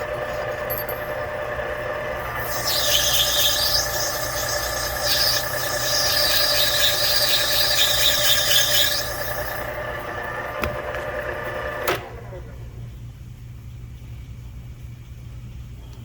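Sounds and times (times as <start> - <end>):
machine spindle humming: 0.0 - 11.8
cutter squealing hiss on metal: 2.4 - 9.6.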